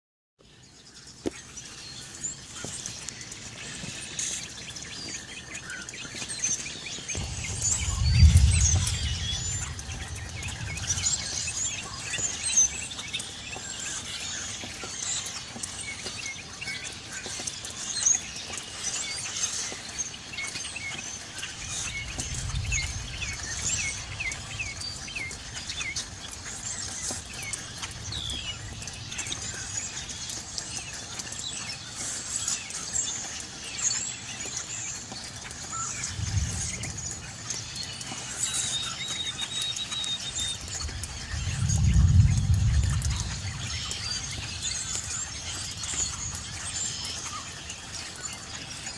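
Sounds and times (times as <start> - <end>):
songbirds chirping and calling: 0.4 - 48.9
distant thunder rumble: 7.1 - 13.7, 21.7 - 30.0, 35.9 - 38.3, 40.6 - 47.5.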